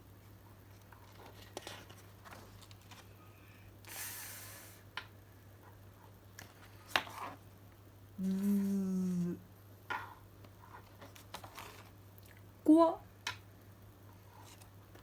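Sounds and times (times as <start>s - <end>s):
low steady hum: 0.0s - 15.0s
rustling hiss: 3.8s - 4.9s.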